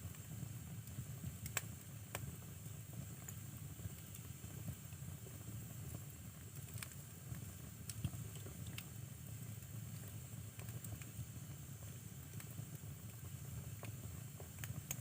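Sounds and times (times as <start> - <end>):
fire crackles and pops: 0.0 - 15.0.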